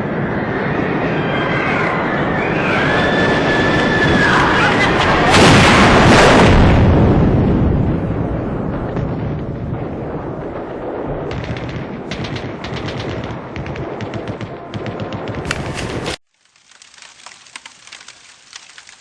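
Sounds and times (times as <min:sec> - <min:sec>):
large explosion rumble: 0:02.2 - 0:14.4
machine-gun fire: 0:11.3 - 0:16.2.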